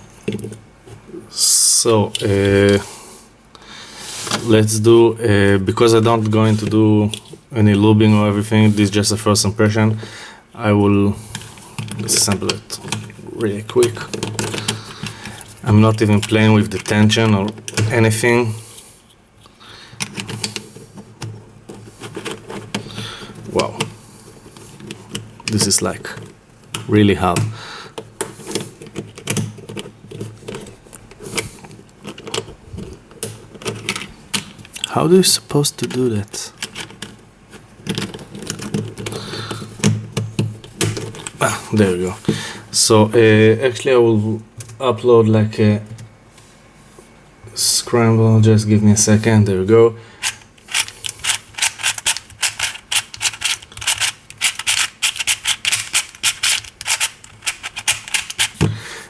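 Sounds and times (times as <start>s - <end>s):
plastic puzzle cube clicking: 50.2s - 58.8s.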